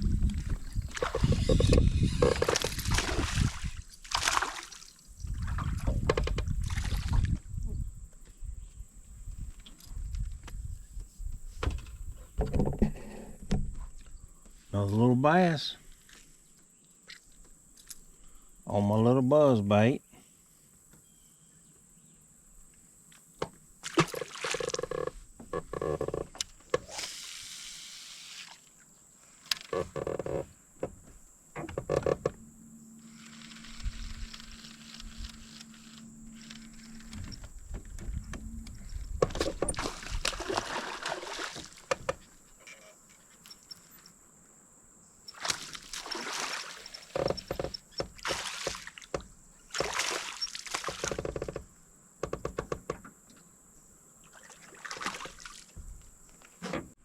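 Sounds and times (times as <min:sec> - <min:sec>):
water splashing: 0:00.0 - 0:07.3, 0:23.8 - 0:25.0, 0:39.3 - 0:42.0, 0:45.3 - 0:47.4, 0:48.2 - 0:49.1, 0:49.7 - 0:51.2, 0:54.2 - 0:55.8
low steady hum: 0:30.5 - 0:41.8.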